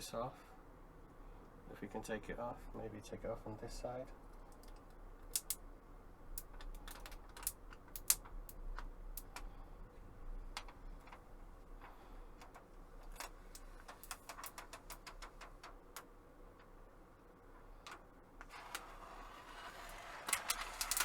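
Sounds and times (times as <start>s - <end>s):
plastic film peeling clicks: 4.6s - 5.6s, 6.4s - 8.6s, 20.2s - 21.0s.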